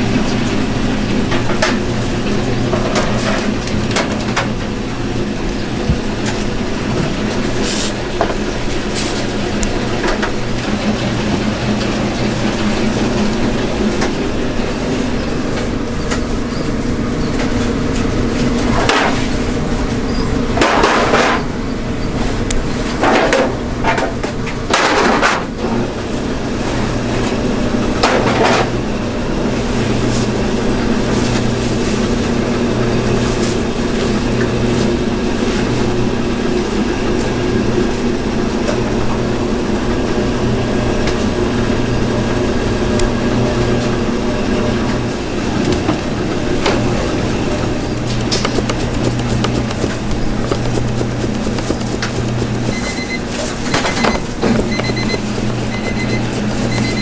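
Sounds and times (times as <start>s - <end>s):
machine hum: 45.4s - 57.0s.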